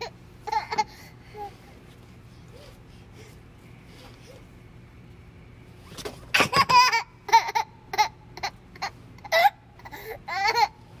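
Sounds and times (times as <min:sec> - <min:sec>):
toddler giggling: 0:00.0 - 0:01.6, 0:06.4 - 0:09.5, 0:10.3 - 0:10.8.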